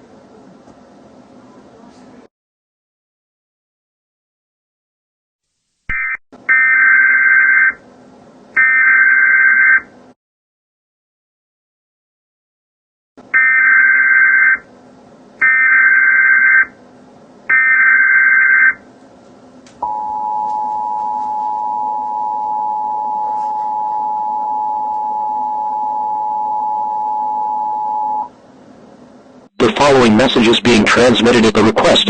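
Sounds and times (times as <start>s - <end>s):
steady dual tone alert signal: 5.9s - 7.8s, 8.6s - 9.9s, 13.4s - 14.6s, 15.4s - 16.8s, 17.5s - 18.8s, 19.8s - 28.3s.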